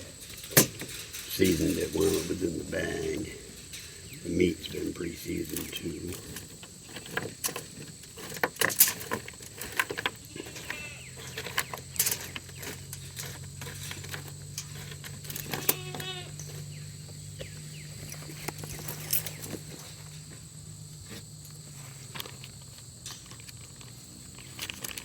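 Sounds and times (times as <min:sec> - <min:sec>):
food and foil handling rattles: 0:00.0 - 0:25.0
low steady hum: 0:00.0 - 0:25.0.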